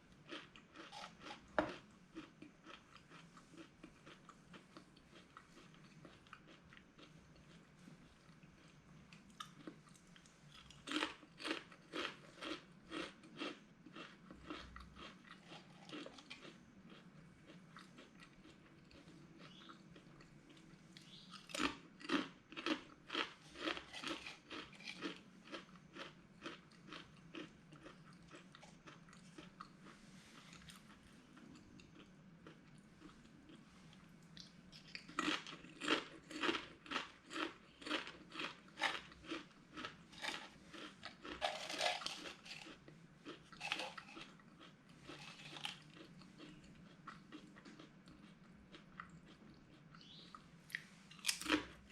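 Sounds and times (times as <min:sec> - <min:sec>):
person crunching potato chips: 0:00.2 - 0:07.7, 0:08.6 - 0:30.0, 0:34.8 - 0:51.9.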